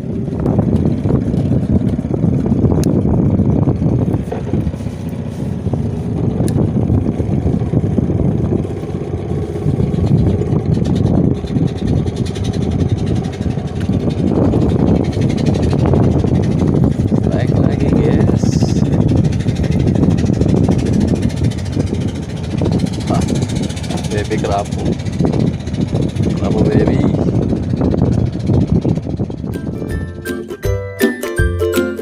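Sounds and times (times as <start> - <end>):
boat engine rumbling: 0.0 - 32.0.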